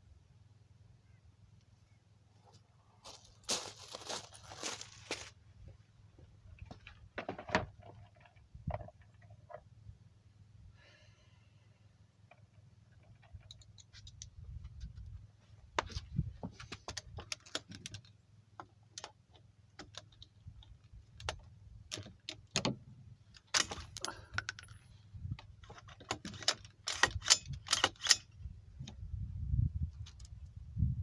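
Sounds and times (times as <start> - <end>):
metallic clicks and rattles: 12.3 - 14.6, 23.3 - 29.0.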